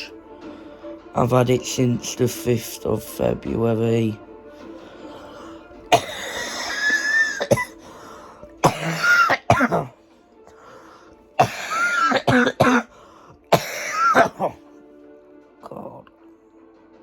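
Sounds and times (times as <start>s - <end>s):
person coughing: 5.9s - 8.0s, 8.6s - 10.0s, 11.4s - 12.9s, 13.5s - 14.6s.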